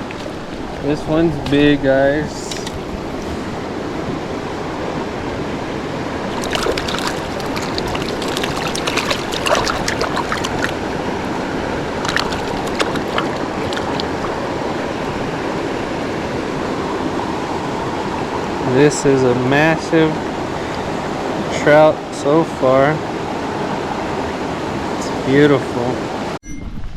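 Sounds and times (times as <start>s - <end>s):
creek water rushing: 2.1s - 18.8s
sharp clicks and splashes: 2.4s - 3.3s, 6.3s - 14.8s.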